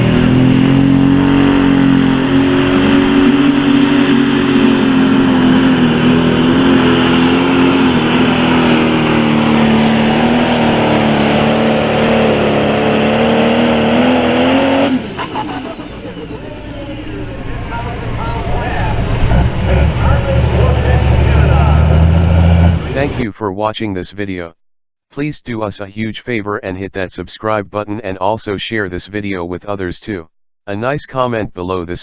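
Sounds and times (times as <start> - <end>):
diesel tractor engine at high revs: 0.0 - 23.2.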